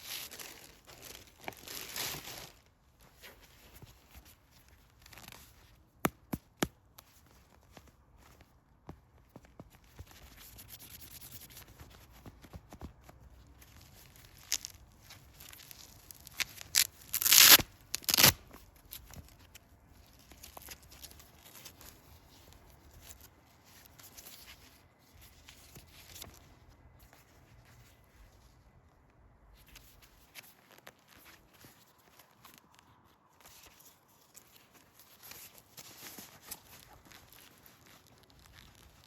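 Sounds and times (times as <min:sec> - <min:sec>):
packaging rustling and crinkling: 0:00.0 - 0:05.8, 0:11.6 - 0:28.6, 0:29.6 - 0:39.0
packaging ripping: 0:15.4 - 0:18.5.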